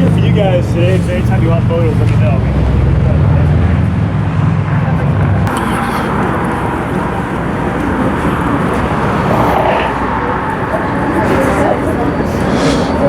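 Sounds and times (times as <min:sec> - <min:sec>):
passing road traffic: 0:00.0 - 0:13.0.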